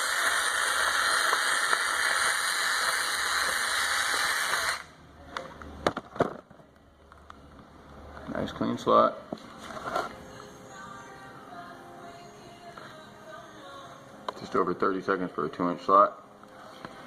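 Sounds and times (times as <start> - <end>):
electric drill whirring: 0.0 - 4.9.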